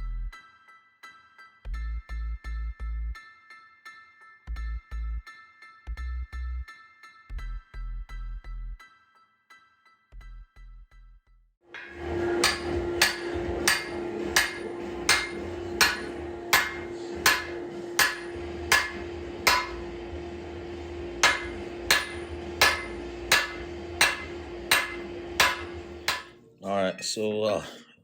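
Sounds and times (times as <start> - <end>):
hammer blows on ringing metal: 11.7 - 26.4
steady hum: 11.7 - 26.4.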